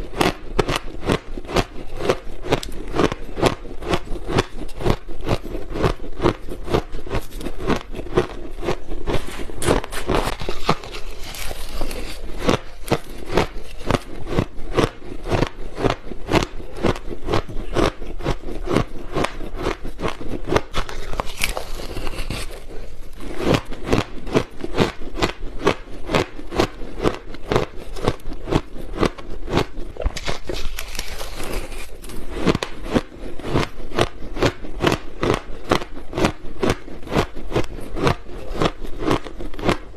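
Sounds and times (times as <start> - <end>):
ice being chewed: 0.0 - 39.9.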